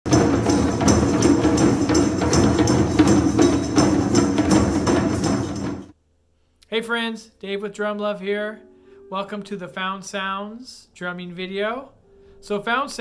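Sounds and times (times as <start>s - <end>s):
hand percussion clicking beat: 0.0s - 5.9s.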